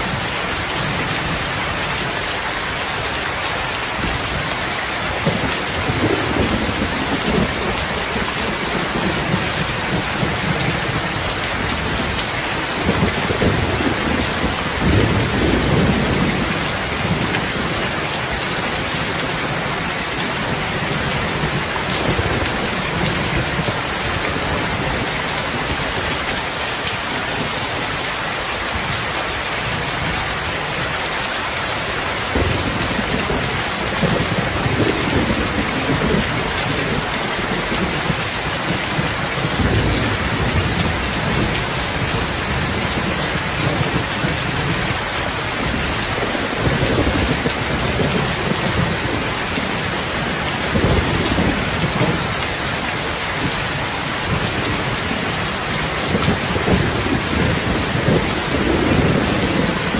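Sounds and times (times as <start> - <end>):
heavy rain: 0.0 - 59.9
low thunder rolls: 5.1 - 26.0, 32.3 - 52.4, 55.8 - 59.9.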